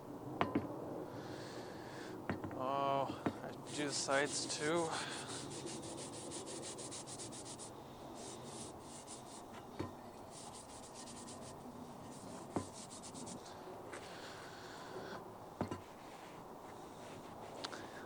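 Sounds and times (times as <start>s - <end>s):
wire brush scraping iron pan: 3.6s - 9.6s, 10.2s - 13.5s.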